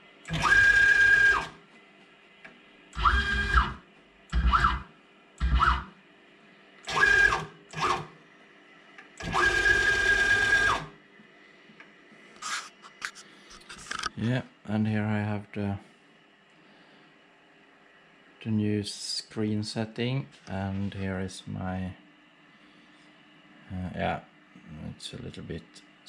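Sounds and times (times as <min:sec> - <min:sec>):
stepper motors whining: 0:00.3 - 0:01.6, 0:03.0 - 0:05.9, 0:06.9 - 0:08.1, 0:09.2 - 0:10.9.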